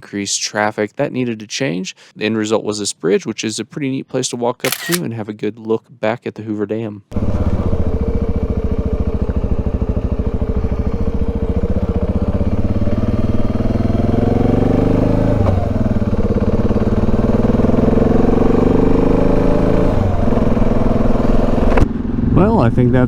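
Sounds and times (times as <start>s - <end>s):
motorcycle engine accelerating: 7.1s - 22.5s.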